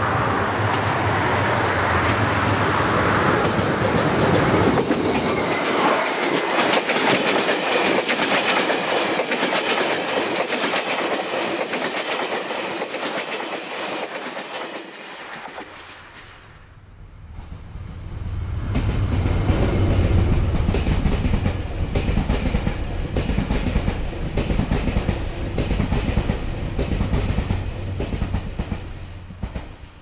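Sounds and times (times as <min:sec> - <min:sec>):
train rumbling: 0:00.0 - 0:30.0
wheels clickety-clack on rail joints: 0:03.2 - 0:16.2, 0:18.6 - 0:30.0.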